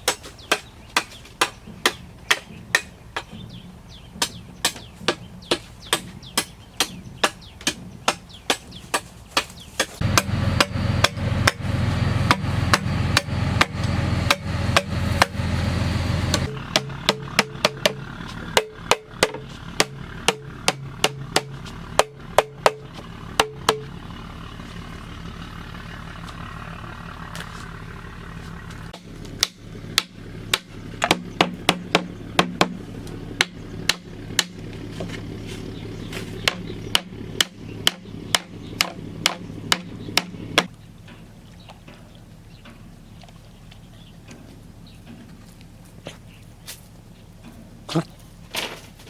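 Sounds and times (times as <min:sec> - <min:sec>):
hand tool striking bamboo: 0:04.2 - 0:23.9, 0:29.0 - 0:32.8, 0:36.2 - 0:40.7
steady low hum: 0:10.0 - 0:40.7.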